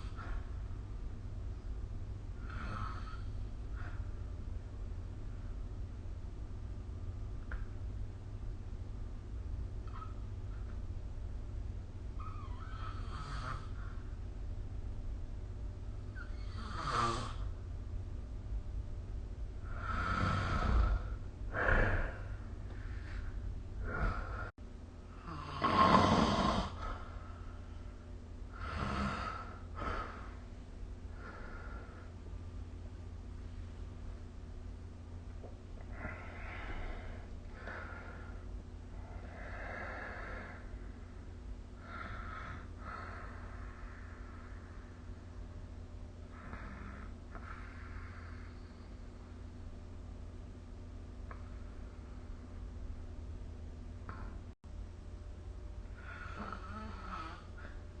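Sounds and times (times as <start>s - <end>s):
person snoring: 2.4s - 3.3s, 19.7s - 22.2s, 25.2s - 26.9s, 56.0s - 57.7s.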